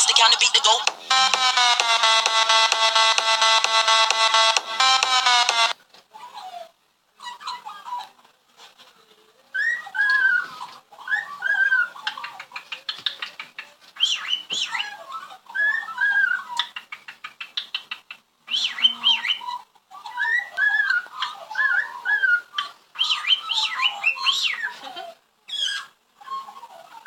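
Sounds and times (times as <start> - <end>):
birds whistling and chirping: 18.5 - 19.5, 20.2 - 24.7.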